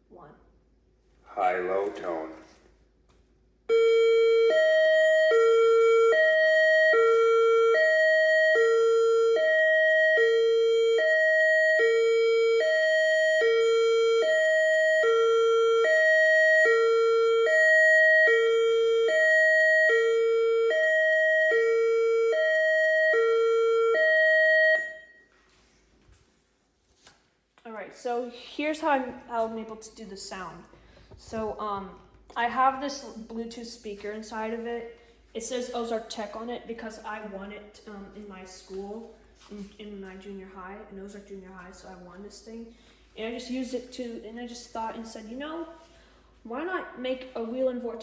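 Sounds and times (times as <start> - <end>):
high-low warning siren tone: 3.7 - 25.5.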